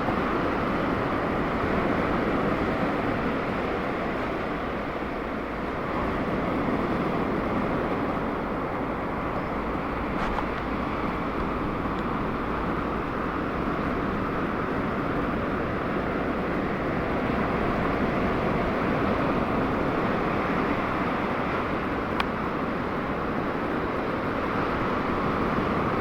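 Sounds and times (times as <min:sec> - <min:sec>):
ocean surf breaking: 0:00.0 - 0:26.0.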